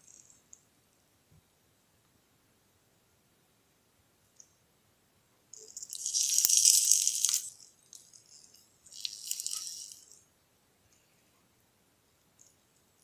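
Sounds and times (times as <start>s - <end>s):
rattling: 5.6s - 10.2s.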